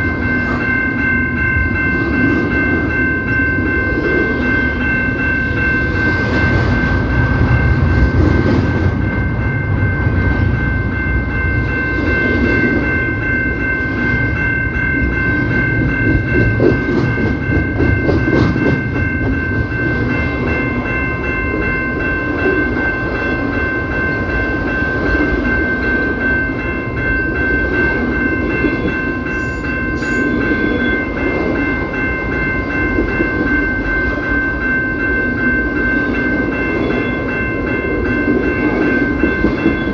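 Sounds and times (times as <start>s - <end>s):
train rumble: 0.0s - 39.9s
train wheels clacking over rail joints: 15.8s - 20.1s.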